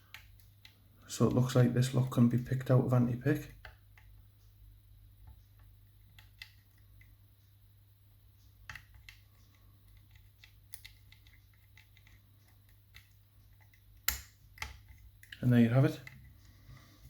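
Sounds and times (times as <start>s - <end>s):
low steady hum: 0.0s - 17.0s
lock pick clicks and ticks: 12.9s - 15.4s.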